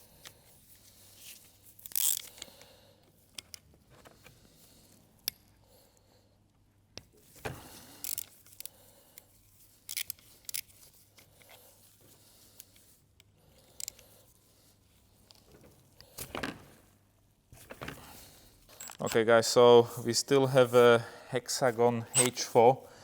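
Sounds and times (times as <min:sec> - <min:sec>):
metal tools clicking and rattling: 0:18.7 - 0:19.3, 0:22.1 - 0:22.5.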